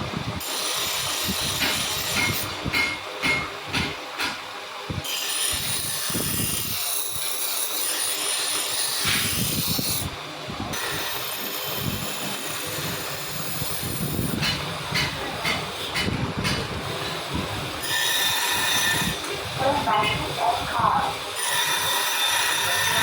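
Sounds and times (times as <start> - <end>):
power tool grinding steel: 0.4 - 2.5, 5.0 - 10.1, 10.7 - 14.6, 16.8 - 20.5, 21.2 - 23.0.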